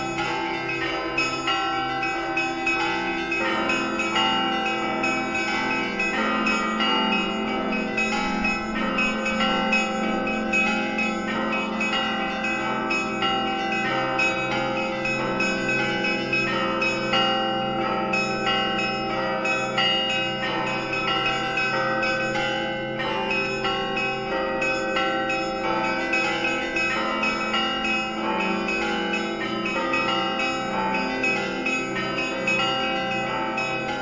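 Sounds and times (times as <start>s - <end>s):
deep bell humming: 0.0s - 23.0s
church bells ringing: 0.0s - 34.0s.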